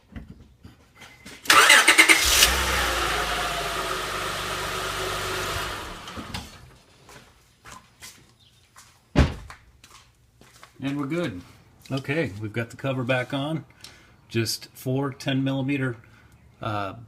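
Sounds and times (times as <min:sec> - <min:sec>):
engine starter cranking: 0:01.5 - 0:06.7
car engine running: 0:02.2 - 0:06.7.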